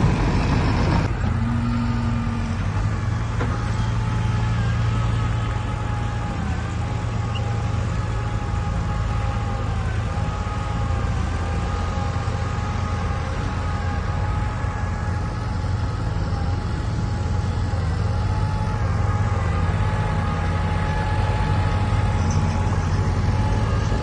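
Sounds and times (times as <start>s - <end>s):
diesel engine deep hum: 0.0s - 24.0s.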